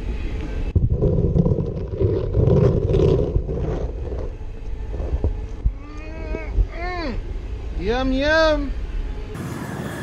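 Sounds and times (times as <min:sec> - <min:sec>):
sludge bubbling and gurgling: 0:00.8 - 0:04.4.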